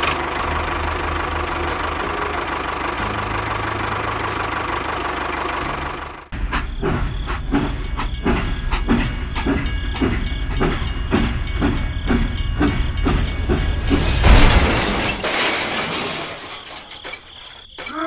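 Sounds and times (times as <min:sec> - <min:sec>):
small engine knocking rhythmically: 0:00.0 - 0:14.3.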